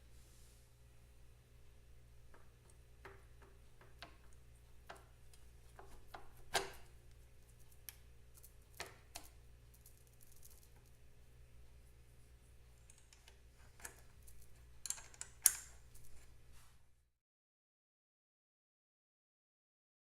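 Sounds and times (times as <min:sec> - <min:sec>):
faint low hum: 0:00.0 - 0:17.1.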